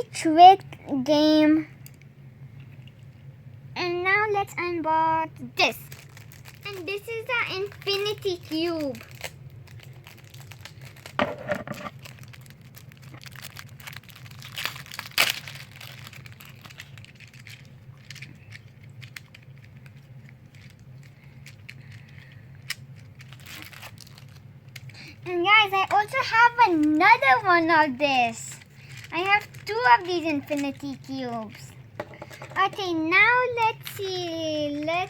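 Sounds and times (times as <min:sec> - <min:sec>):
packaging crinkling and tearing: 0:05.6 - 0:31.6, 0:32.6 - 0:35.0.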